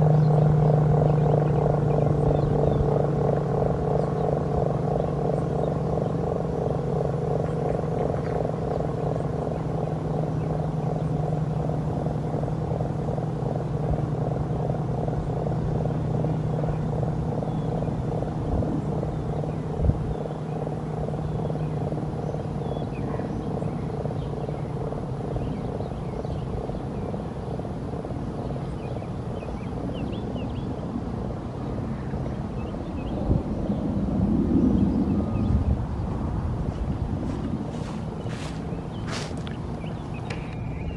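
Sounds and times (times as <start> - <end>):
throbbing warning siren: 34.5 - 40.9.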